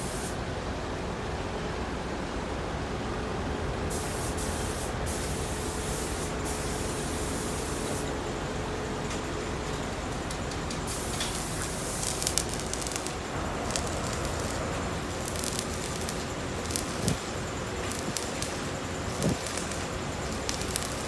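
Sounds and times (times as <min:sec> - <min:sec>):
arc welding crackling hiss: 0:00.0 - 0:00.4, 0:03.9 - 0:08.2, 0:10.4 - 0:21.0.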